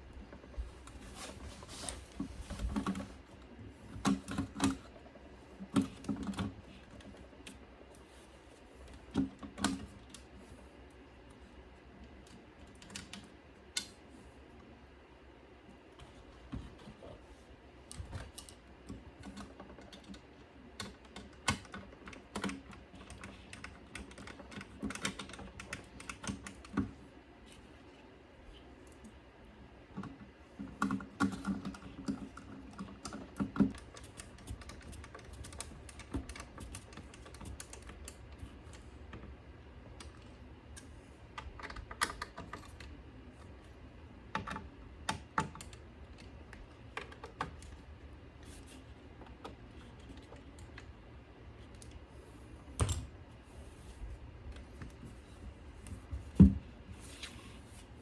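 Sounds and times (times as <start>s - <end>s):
faint steady hum: 0.0s - 58.0s
small clicks and taps: 5.6s - 8.2s, 8.8s - 10.4s, 11.2s - 14.0s, 17.8s - 27.7s, 29.9s - 51.0s.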